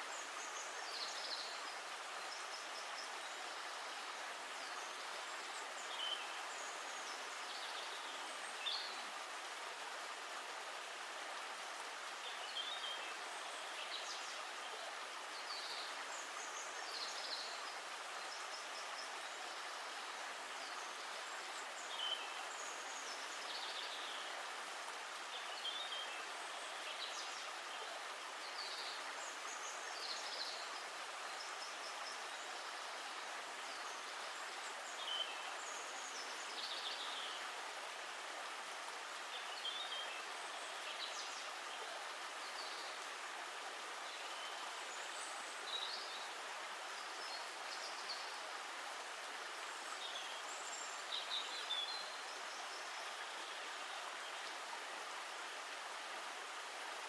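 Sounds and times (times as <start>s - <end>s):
running water rushing: 0.0s - 57.0s.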